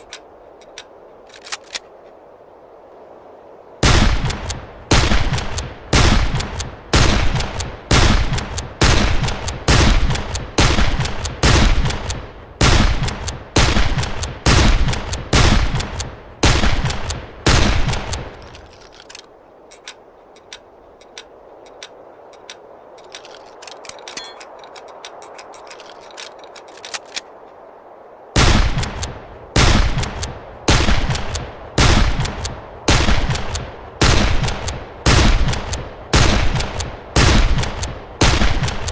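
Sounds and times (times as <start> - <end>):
small clicks: 0.0 - 2.2, 5.3 - 12.3, 17.8 - 27.4, 32.1 - 32.6, 35.4 - 35.9, 38.6 - 38.9.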